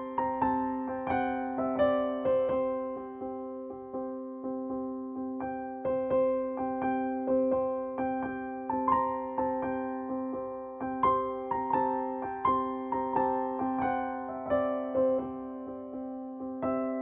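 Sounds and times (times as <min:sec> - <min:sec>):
soft electric piano melody: 0:00.0 - 0:17.0.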